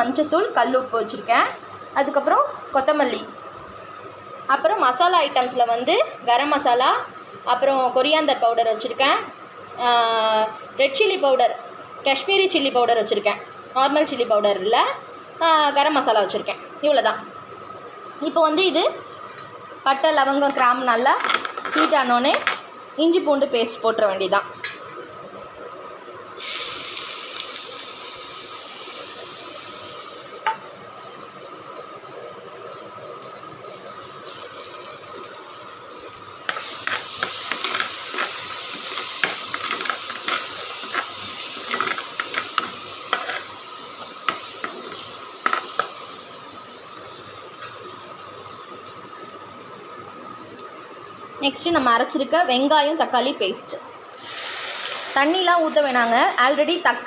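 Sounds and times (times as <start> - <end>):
paste sizzling in hot butter: 26.4 - 32.2, 34.0 - 50.0, 54.2 - 56.2
spatula clicking and scraping: 36.5 - 43.5.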